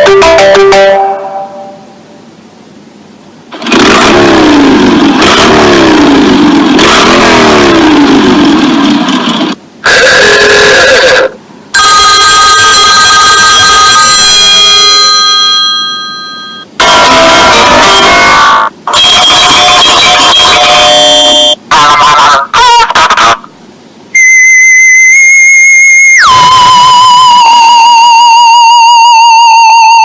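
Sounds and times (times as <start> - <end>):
distorted engine revving alarm tone: 24.2 - 30.0.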